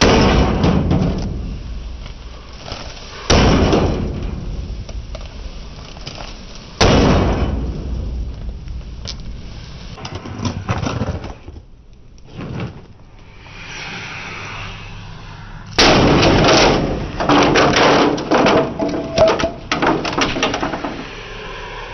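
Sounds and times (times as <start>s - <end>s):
loud bangs on microwave oven: 0.0s - 1.2s, 6.8s - 7.6s
small knocks and rattles: 16.2s - 21.1s.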